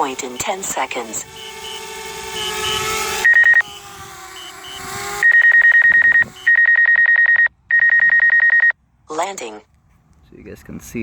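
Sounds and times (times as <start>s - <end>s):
drone propellers humming: 0.0s - 6.6s
high-pitched alarm beeping: 0.0s - 8.7s.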